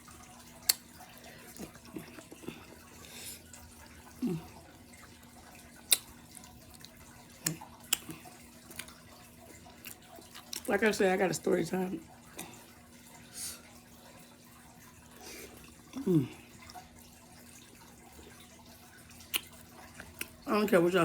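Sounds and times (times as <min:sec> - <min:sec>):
water trickling: 0:00.0 - 0:21.0
clicks and smacks of eating: 0:00.3 - 0:03.2, 0:04.6 - 0:10.8, 0:19.0 - 0:20.5
low humming voice: 0:04.1 - 0:04.6, 0:15.9 - 0:16.5.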